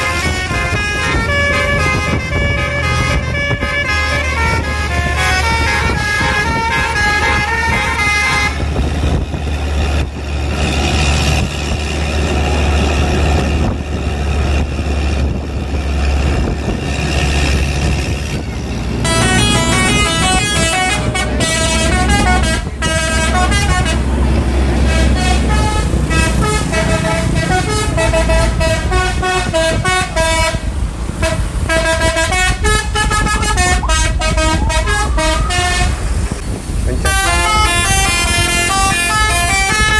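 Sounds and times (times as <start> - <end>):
bus horn playing multi-tone tune: 0.0 - 9.0, 19.0 - 39.9
bus engine running: 0.0 - 39.9.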